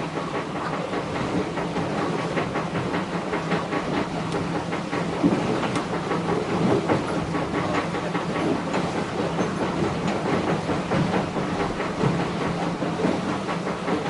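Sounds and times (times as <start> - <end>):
rushing water: 0.0 - 14.0
wind: 0.0 - 14.0.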